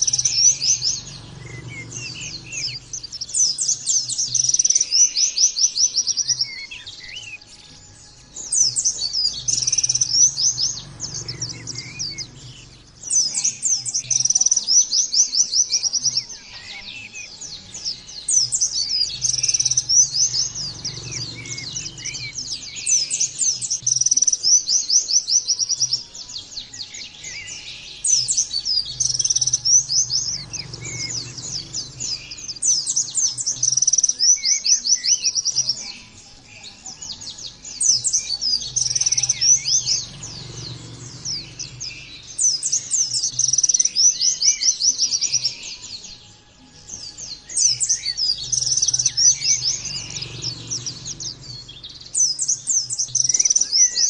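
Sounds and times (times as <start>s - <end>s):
bird singing trilled phrases: 0.0s - 54.0s.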